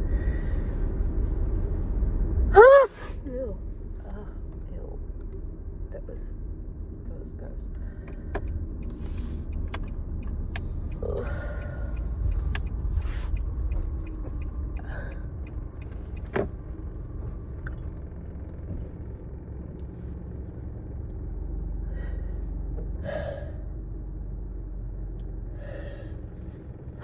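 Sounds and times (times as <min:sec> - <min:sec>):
road rumble inside car: 0:00.0 - 0:27.0
woman's sharp congested breaths: 0:10.8 - 0:13.4.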